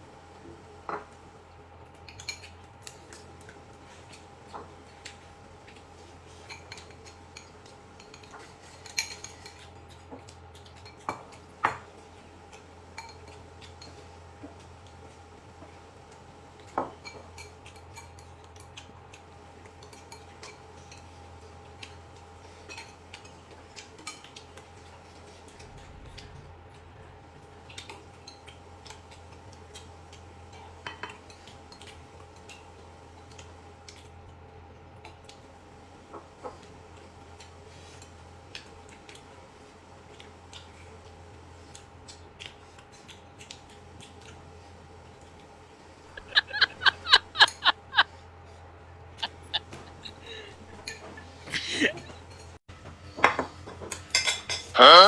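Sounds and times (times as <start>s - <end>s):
faint steady hum: 0.0s - 55.0s
utensils clinking on dishes: 1.9s - 3.2s, 4.5s - 11.9s, 12.9s - 14.1s, 16.6s - 18.8s, 22.5s - 25.9s, 46.1s - 48.0s, 49.2s - 54.8s.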